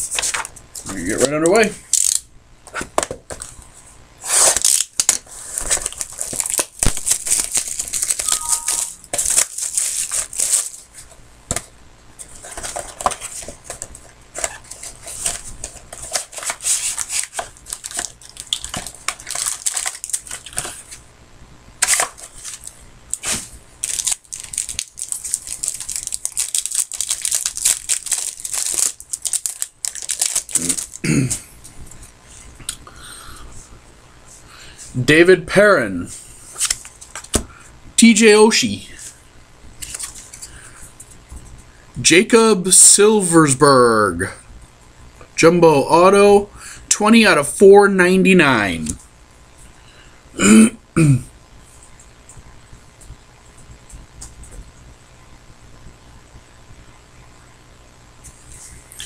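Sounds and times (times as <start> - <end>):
wrappers crinkling and tearing: 1.9 - 2.2, 4.3 - 11.1, 12.3 - 21.0, 21.8 - 31.0.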